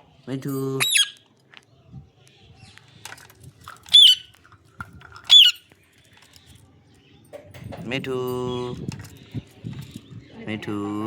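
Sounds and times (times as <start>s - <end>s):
parrot squawking shrilly: 0.8s - 1.2s, 3.9s - 4.3s, 5.3s - 5.6s.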